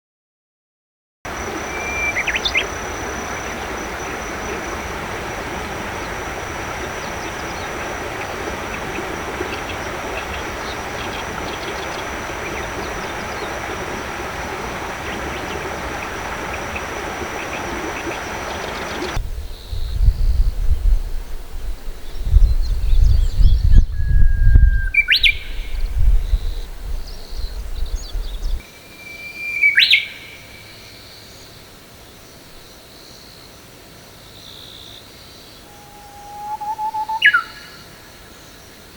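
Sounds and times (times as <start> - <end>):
high steady whine: 1.3 - 22.5
outdoor background noise: 1.3 - 38.9.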